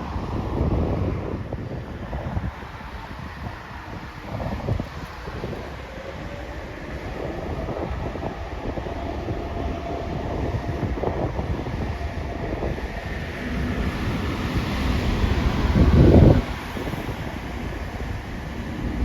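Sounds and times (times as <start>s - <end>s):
jet engines droning: 0.0s - 19.0s
wind buffeting microphone: 0.0s - 19.0s.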